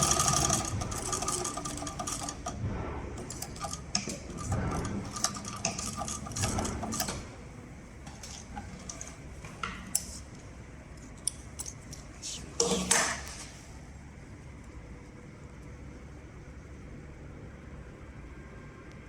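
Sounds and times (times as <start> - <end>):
sewing machine stitching: 0.0 - 2.6, 3.2 - 7.3.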